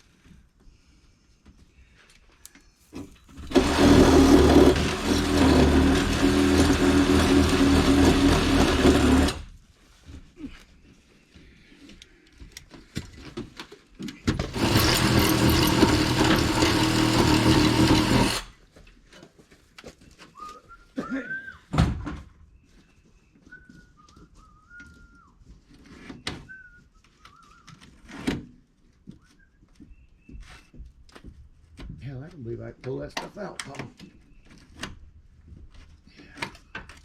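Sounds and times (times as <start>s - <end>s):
power tool cutting wood: 3.4s - 9.5s, 14.4s - 18.6s.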